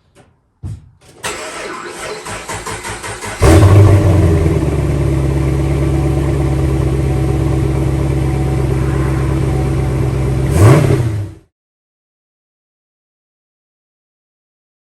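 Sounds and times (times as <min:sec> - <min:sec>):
engine revving: 0:01.3 - 0:11.5
car engine idling: 0:01.4 - 0:11.4.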